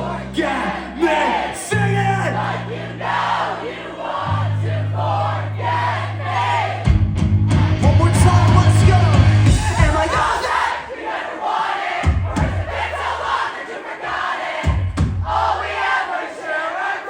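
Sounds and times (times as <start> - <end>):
crowd singing along: 0.0 - 17.0
pop-punk band playing: 5.6 - 10.8, 12.0 - 13.3
person singing: 7.6 - 10.8.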